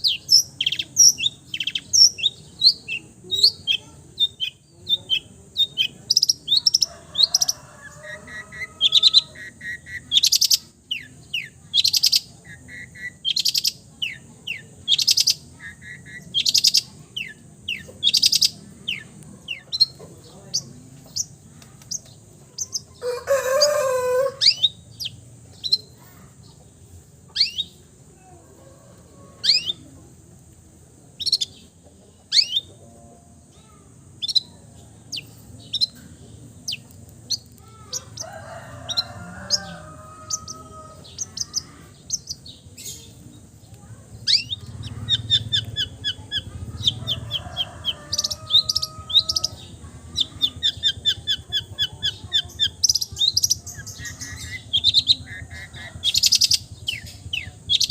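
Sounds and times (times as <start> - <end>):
bird whistling song: 27.4 - 27.8.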